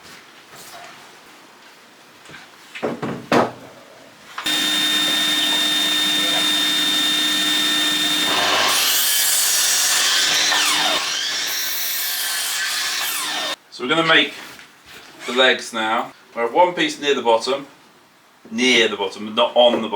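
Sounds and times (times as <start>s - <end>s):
power saw cutting wood: 4.5s - 13.6s.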